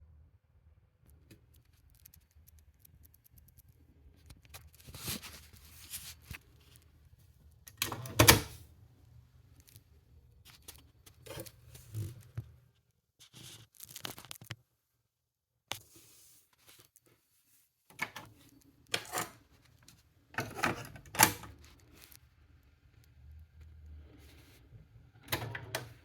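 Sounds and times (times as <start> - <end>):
cassette deck clicks and knocks: 7.8 - 8.5.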